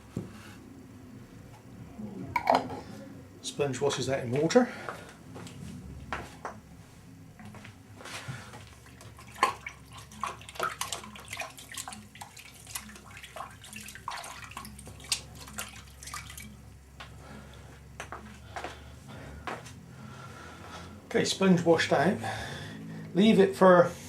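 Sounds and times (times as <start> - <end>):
sponge rinsed in sink water: 8.8 - 16.6.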